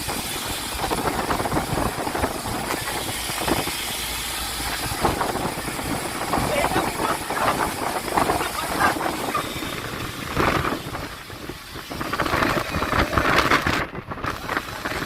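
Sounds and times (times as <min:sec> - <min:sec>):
heavy rain at sea: 0:00.0 - 0:15.0
wind: 0:00.0 - 0:15.0.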